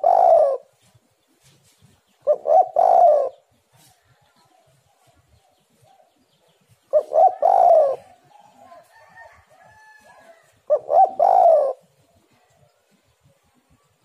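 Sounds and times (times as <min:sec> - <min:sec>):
dove cooing: 0:00.0 - 0:00.8, 0:02.2 - 0:03.6, 0:06.9 - 0:12.8.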